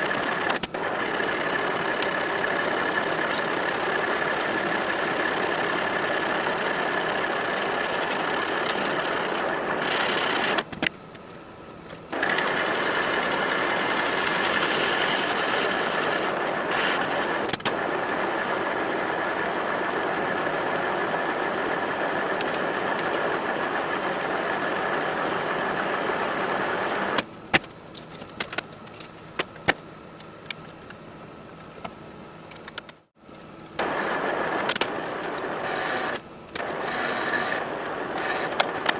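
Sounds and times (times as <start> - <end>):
machine tool whining: 0.0 - 10.7, 12.1 - 27.2, 33.8 - 38.9.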